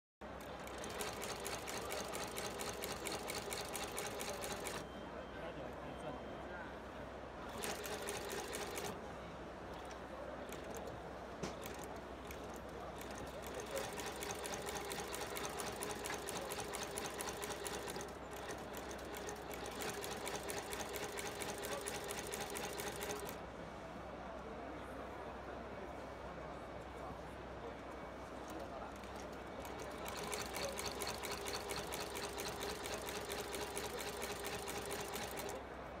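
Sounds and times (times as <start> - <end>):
sewing machine stitching: 0.6 - 4.8, 7.5 - 9.0, 11.4 - 23.4, 29.0 - 35.6.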